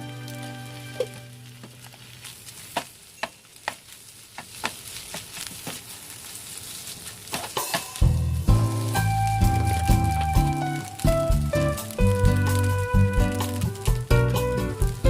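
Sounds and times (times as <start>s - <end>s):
music: 0.0s - 1.7s, 7.7s - 15.0s
food sizzling in a frying pan: 0.0s - 15.0s.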